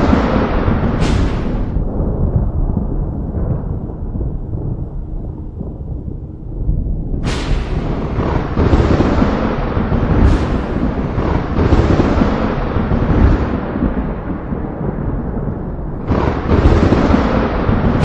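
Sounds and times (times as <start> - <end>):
sharp thunder cracks: 0.0 - 18.0
thunder rolling and rumbling: 0.0 - 18.0.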